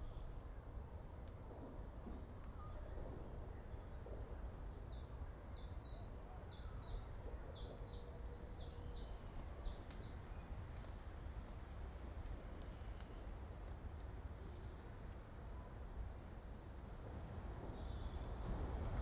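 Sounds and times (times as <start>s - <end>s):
low wind rumble: 0.0s - 19.0s.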